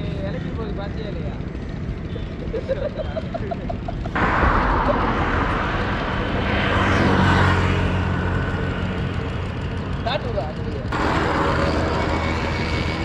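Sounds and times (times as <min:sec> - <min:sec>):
vehicle passing by: 0:04.1 - 0:13.0.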